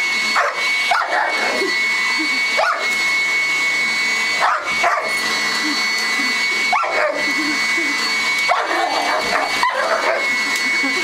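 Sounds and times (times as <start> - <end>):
vacuum cleaner whining: 0.0 - 11.0
dog barking: 2.6 - 2.8, 4.4 - 5.1.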